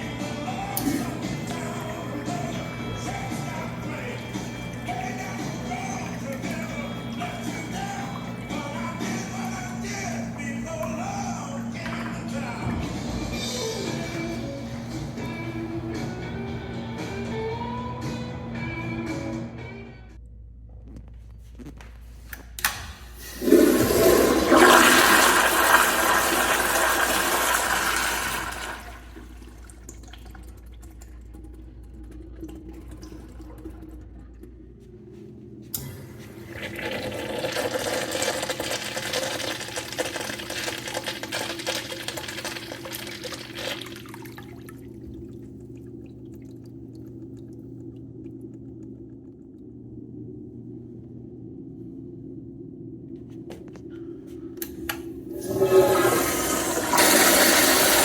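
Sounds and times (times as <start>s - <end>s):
toilet flushing: 0.0s - 17.8s, 22.9s - 49.4s, 54.4s - 58.0s
steady low hum: 0.0s - 58.0s
flush valve click: 54.6s - 58.0s.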